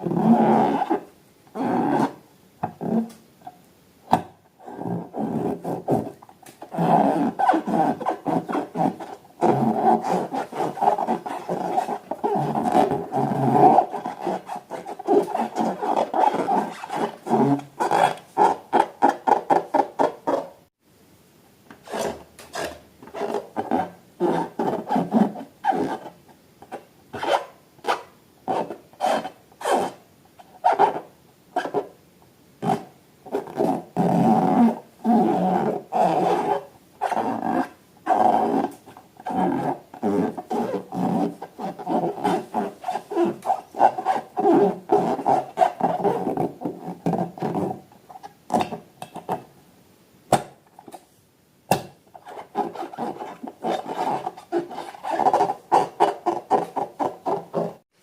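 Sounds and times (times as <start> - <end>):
hand rubbing rubber balloon: 4.7 - 20.6, 32.6 - 47.9, 52.2 - 57.8.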